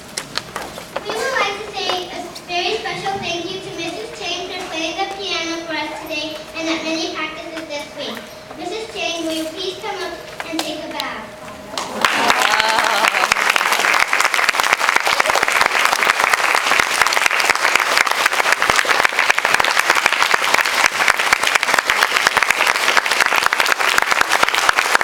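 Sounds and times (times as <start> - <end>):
audience applauding: 11.8 - 25.0.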